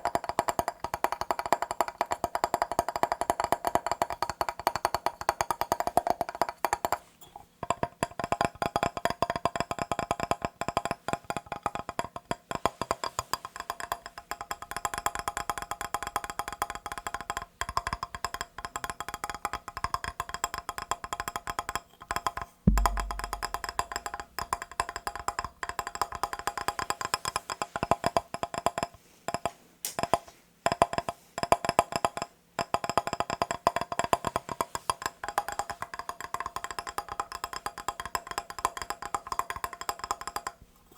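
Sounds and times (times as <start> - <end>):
low thump: 22.7 - 24.4
fast tapping on glass mirror: 22.7 - 24.6.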